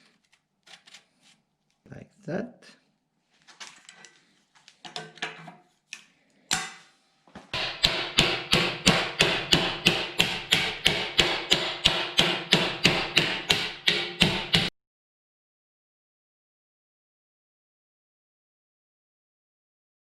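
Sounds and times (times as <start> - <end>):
hammer blows on sheet metal: 7.5 - 14.7.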